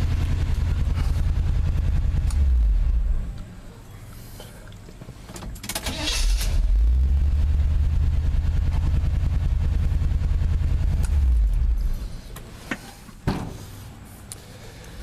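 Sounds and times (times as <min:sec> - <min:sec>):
truck engine running: 0:00.0 - 0:05.2, 0:06.0 - 0:12.7.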